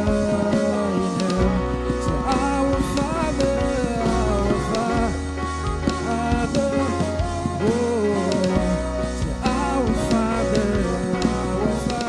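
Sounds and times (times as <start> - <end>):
drum hits: 0.0 - 12.0
worship band playing: 0.0 - 12.0.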